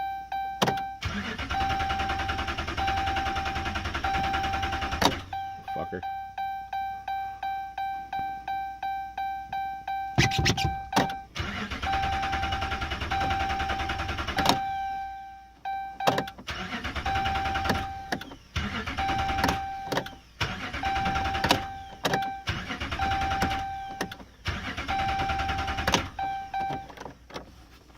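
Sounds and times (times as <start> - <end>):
engine starter cranking: 0.6 - 5.4, 10.2 - 14.7, 16.0 - 27.3
steady high tone: 5.3 - 11.0.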